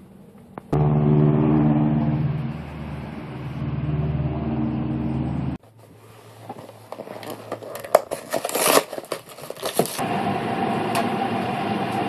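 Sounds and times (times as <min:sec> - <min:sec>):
car engine humming: 0:00.6 - 0:05.6.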